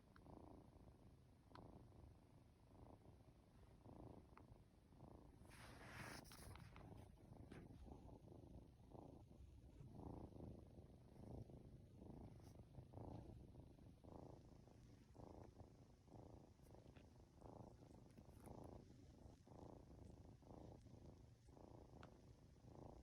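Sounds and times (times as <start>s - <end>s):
kitten purring: 0.0s - 23.0s.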